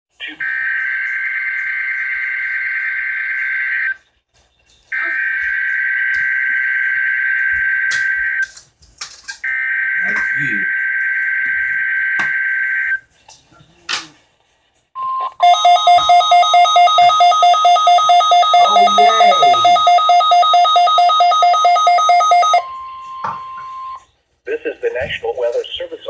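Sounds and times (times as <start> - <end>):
electronic alarm beeping: 0.4 - 4.0, 4.9 - 8.5, 9.4 - 13.0, 15.0 - 24.1
steady high alarm tone: 0.4 - 4.0, 5.0 - 8.5, 9.5 - 13.0, 15.0 - 24.1
buzzy high tone: 15.1 - 24.0.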